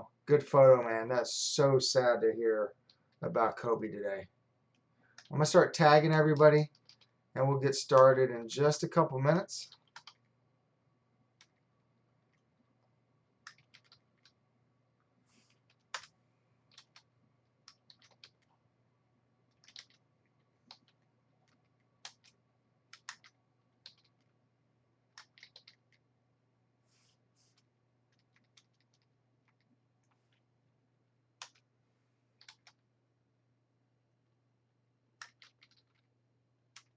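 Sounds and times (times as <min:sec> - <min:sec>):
faint low hum: 0:00.0 - 0:36.9
typing on a computer keyboard: 0:06.7 - 0:07.1, 0:09.7 - 0:10.2, 0:13.4 - 0:14.4, 0:15.5 - 0:18.6, 0:19.5 - 0:20.0, 0:20.6 - 0:24.3, 0:25.2 - 0:26.0, 0:28.1 - 0:30.4, 0:31.4 - 0:31.7, 0:32.4 - 0:32.8, 0:35.2 - 0:36.1.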